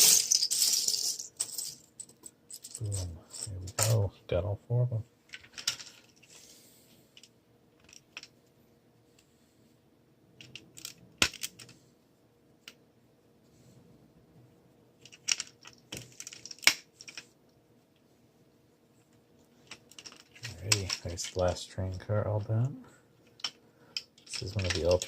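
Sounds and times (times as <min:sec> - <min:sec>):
plastic pieces clicking and rattling: 0:00.0 - 0:03.1, 0:05.3 - 0:06.3, 0:07.2 - 0:08.3, 0:10.4 - 0:11.8, 0:15.0 - 0:17.3, 0:19.6 - 0:21.4, 0:23.2 - 0:25.0.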